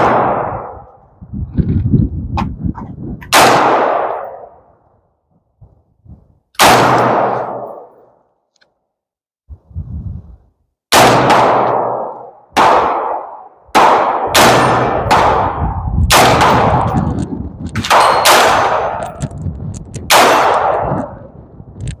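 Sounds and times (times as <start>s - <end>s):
rifle gunshots: 0.0s - 0.7s, 3.3s - 4.5s, 6.6s - 7.9s, 10.9s - 17.2s, 17.8s - 19.2s, 20.1s - 21.1s.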